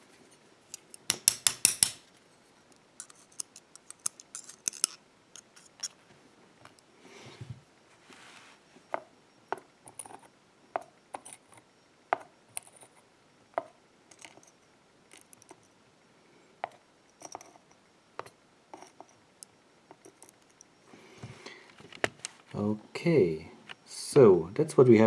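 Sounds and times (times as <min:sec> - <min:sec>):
small metallic clicks: 0:02.7 - 0:06.0.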